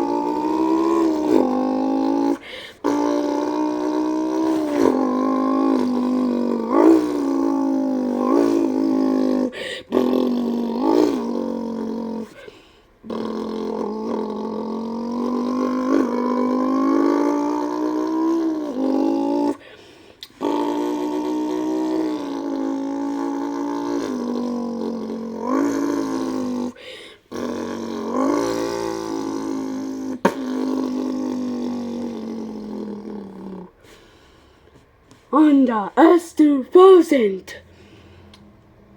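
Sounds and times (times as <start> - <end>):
child imitating engine revving: 0.0 - 19.6, 20.3 - 33.8.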